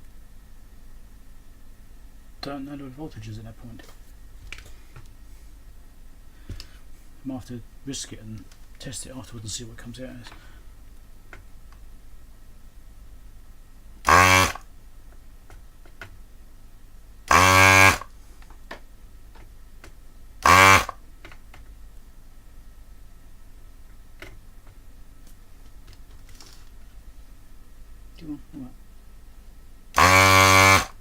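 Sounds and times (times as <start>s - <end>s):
low steady hum: 0.0s - 31.0s
vacuum pump buzzing: 14.0s - 14.7s, 17.2s - 18.1s, 20.4s - 21.1s, 29.9s - 31.0s.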